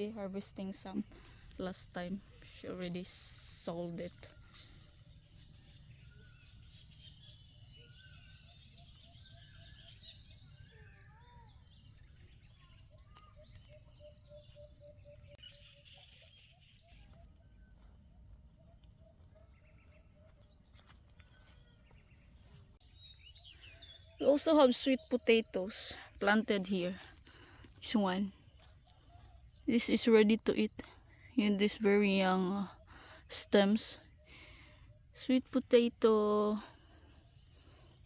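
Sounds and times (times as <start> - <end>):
high insect trill: 0.0 - 38.0.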